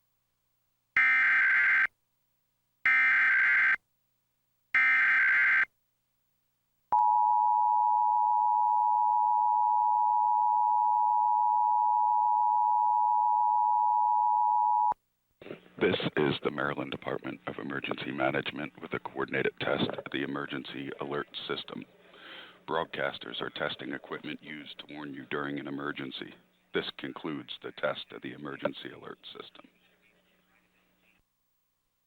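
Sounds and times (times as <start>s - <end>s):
two-tone alarm: 1.0s - 1.9s, 2.9s - 3.8s, 4.8s - 5.7s, 7.0s - 15.0s.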